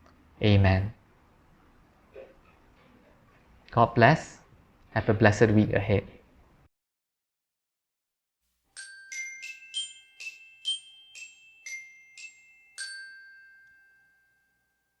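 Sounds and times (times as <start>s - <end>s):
bell-like chime melody: 8.8s - 15.0s.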